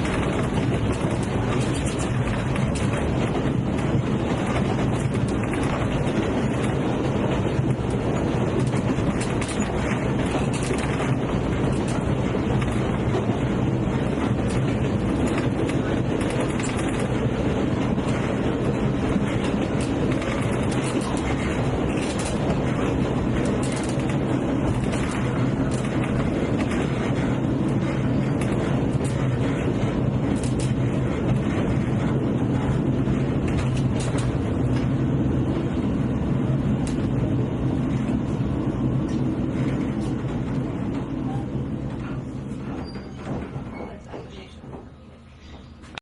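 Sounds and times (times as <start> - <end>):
clicks and rattles: 0.0 - 6.9, 7.5 - 13.3, 14.0 - 17.2, 19.2 - 34.9
train wheels rumbling on track: 0.0 - 46.0.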